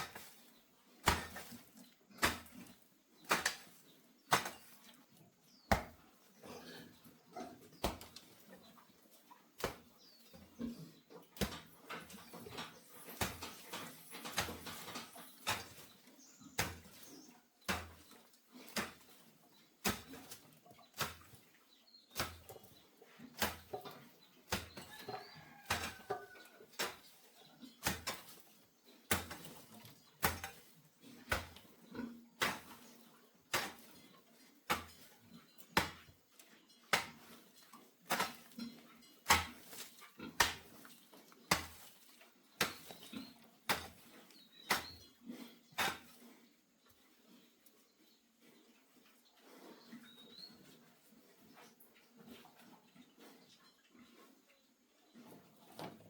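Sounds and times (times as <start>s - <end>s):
bird chirping: 2.6s - 9.0s, 9.9s - 11.3s, 11.9s - 18.2s, 42.4s - 43.4s, 44.1s - 45.8s, 49.8s - 50.7s.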